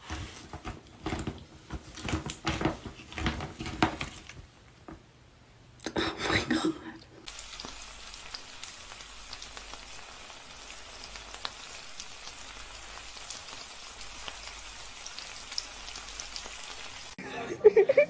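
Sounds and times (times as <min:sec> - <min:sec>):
patter of falling water: 0:07.2 - 0:17.2.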